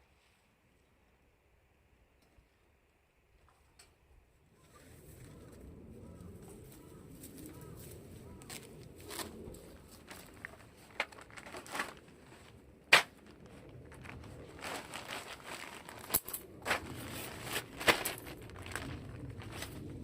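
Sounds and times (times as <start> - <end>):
rustling and crinkling: 4.5 - 20.0.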